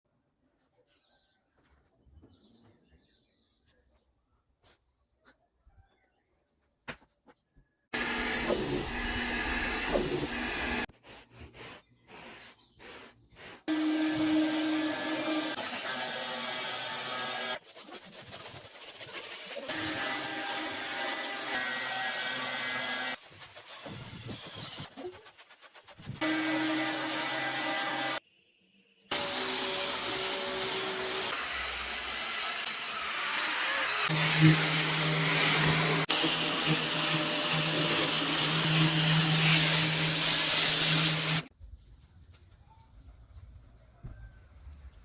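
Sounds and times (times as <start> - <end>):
cleaning machine suction hiss: 8.0 - 10.9, 34.6 - 41.5
vacuum cleaner hum and hiss: 8.0 - 10.9
scraping strokes on carpet: 8.8 - 13.6.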